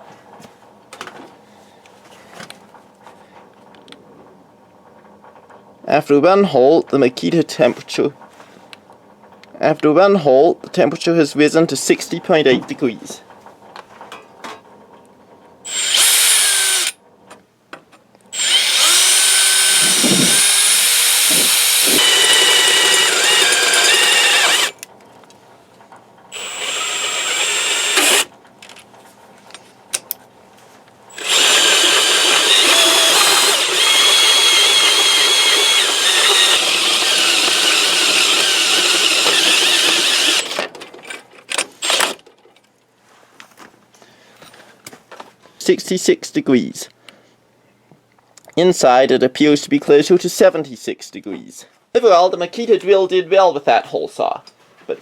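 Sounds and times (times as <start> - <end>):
drill hole saw squealing through metal: 15.7 - 17.0, 18.4 - 24.8, 26.3 - 28.3, 31.1 - 40.6, 41.8 - 42.2.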